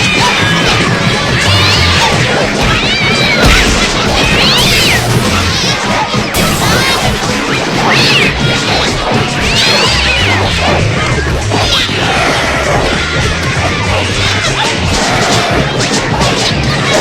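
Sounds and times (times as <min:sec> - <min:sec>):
cartoon crashes and thwacks: 0:02.6 - 0:08.9.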